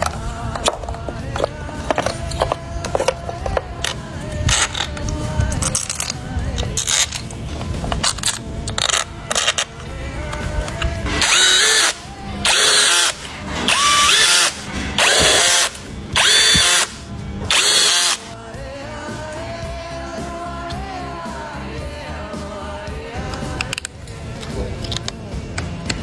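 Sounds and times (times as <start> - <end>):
background music: 0.0 - 26.0
handheld power tool bursts: 10.4 - 18.4.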